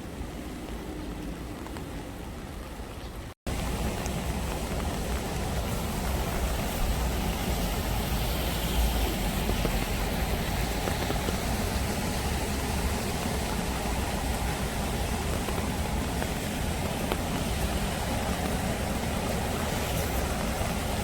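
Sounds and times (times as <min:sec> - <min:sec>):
heavy rain: 0:00.0 - 0:21.0
stream flowing: 0:00.0 - 0:21.0.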